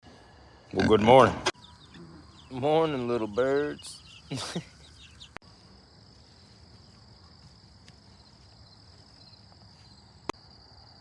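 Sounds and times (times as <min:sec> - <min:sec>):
insects chorus: 0:00.1 - 0:11.0.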